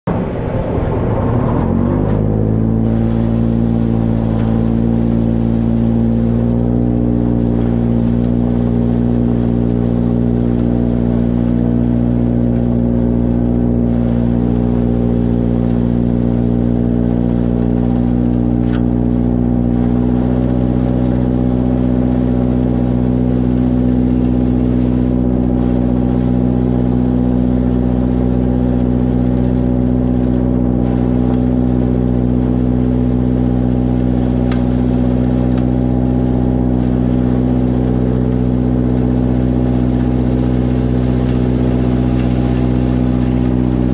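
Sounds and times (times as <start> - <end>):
tractor engine revving: 0.0 - 43.9.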